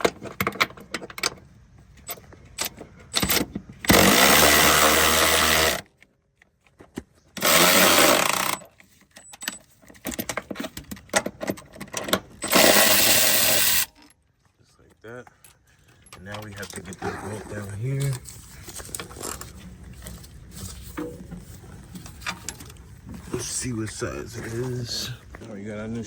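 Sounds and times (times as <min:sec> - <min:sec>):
handheld power tool spinning bolts: 0:02.6 - 0:05.9, 0:07.4 - 0:08.7, 0:12.0 - 0:14.0.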